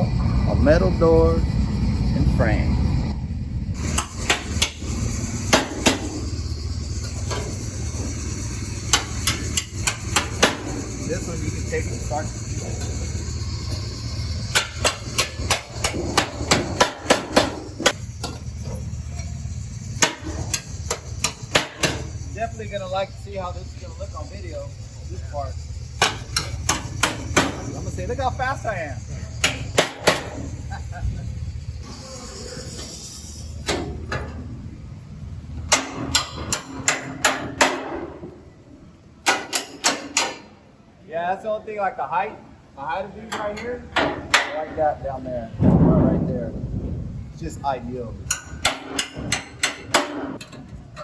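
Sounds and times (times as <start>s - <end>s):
steady low rumble: 0.0s - 39.2s, 44.8s - 51.0s
hammer striking steel frame: 3.8s - 6.3s, 8.8s - 11.0s, 14.5s - 18.5s, 20.0s - 22.2s, 26.0s - 27.8s, 29.4s - 30.5s, 33.6s - 34.4s, 35.6s - 38.4s, 39.2s - 40.6s, 43.3s - 44.9s, 48.2s - 51.0s
hammer blows: 3.8s - 24.6s, 25.9s - 30.9s, 48.2s - 50.5s.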